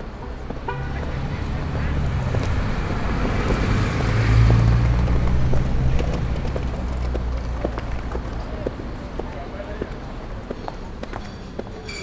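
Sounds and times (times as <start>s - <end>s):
car engine rumble: 0.0s - 9.3s
road noise: 0.0s - 12.0s.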